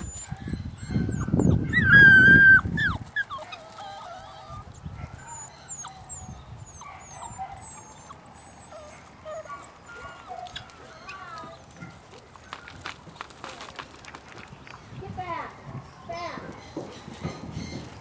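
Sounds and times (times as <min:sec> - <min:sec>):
puppies whining and whimpering: 0:00.0 - 0:12.0
rumbling scuffling noise: 0:09.0 - 0:18.0.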